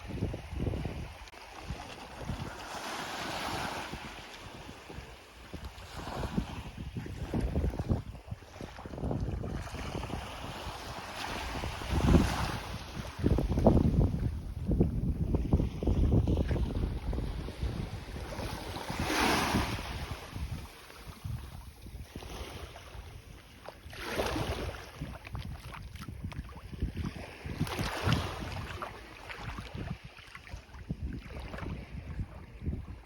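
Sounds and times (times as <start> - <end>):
wind buffeting microphone: 0.0 - 2.7, 3.3 - 33.0
small waves washing on beach: 0.0 - 33.0.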